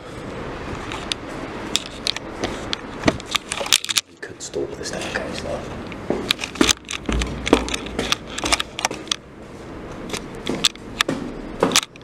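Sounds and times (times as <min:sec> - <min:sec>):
sharp clicks and knocks: 0:05.9 - 0:09.2, 0:10.1 - 0:12.0.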